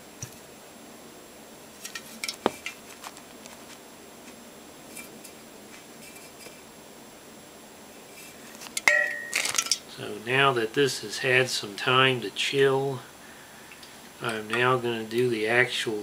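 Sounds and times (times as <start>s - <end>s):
cans and bottles clinking: 8.8s - 9.9s.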